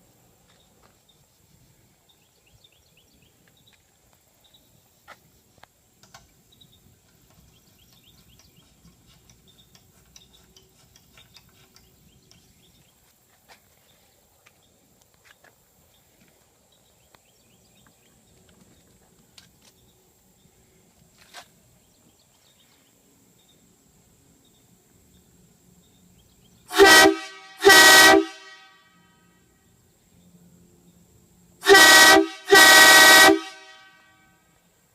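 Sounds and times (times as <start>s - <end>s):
small ticks: 7.0s - 12.7s.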